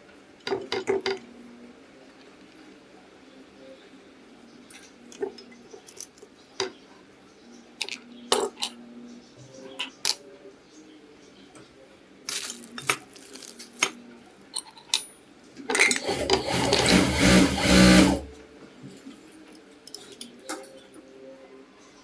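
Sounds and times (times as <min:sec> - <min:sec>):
sewing machine running: 0:16.0 - 0:18.4.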